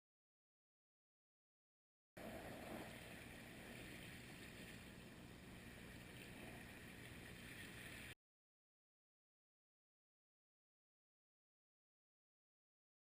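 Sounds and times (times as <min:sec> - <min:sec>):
ocean surf on beach: 0:02.2 - 0:08.2.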